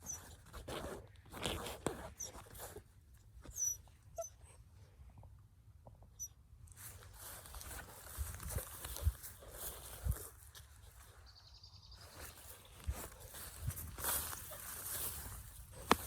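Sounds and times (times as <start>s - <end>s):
puppy squeaking and whimpering: 0.0s - 0.4s, 3.4s - 4.6s, 6.2s - 6.4s
rustling: 6.7s - 11.3s, 12.0s - 16.0s.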